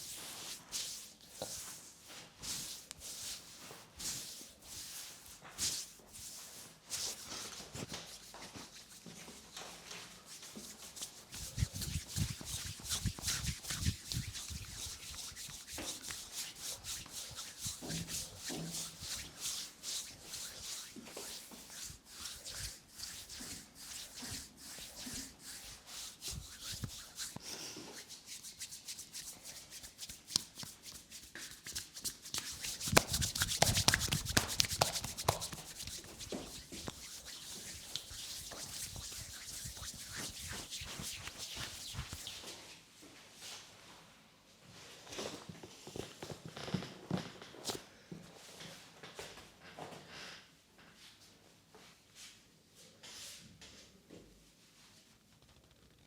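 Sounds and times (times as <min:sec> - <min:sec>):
hands rubbing over skin: 0:10.3 - 0:42.5.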